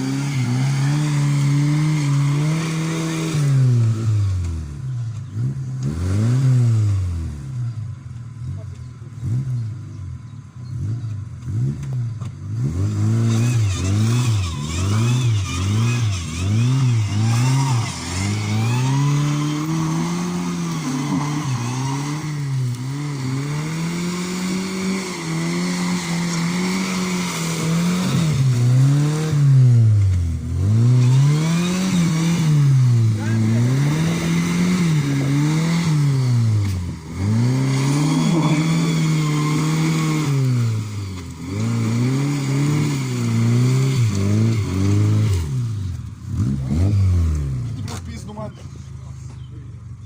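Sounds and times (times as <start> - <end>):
car engine revving: 0.0 - 50.0.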